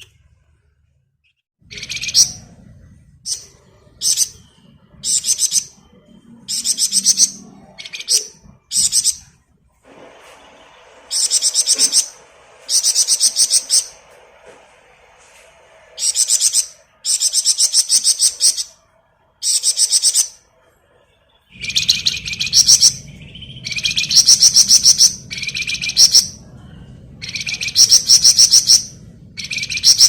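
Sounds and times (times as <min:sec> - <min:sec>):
faint low hum: 0:00.0 - 0:30.0
songbird singing rapid notes: 0:21.5 - 0:26.4, 0:27.2 - 0:30.0.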